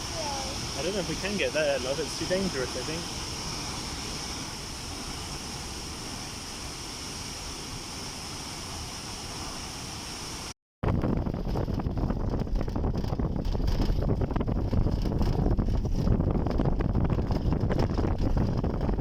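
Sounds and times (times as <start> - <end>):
waterfall rushing: 0.0 - 10.5
wind buffeting microphone: 10.8 - 19.0.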